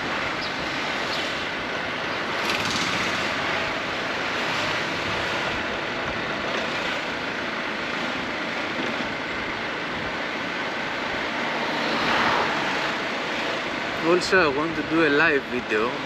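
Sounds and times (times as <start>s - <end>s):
scooter engine: 0.0s - 14.0s
road noise: 0.0s - 16.0s
wind rush: 3.0s - 14.9s.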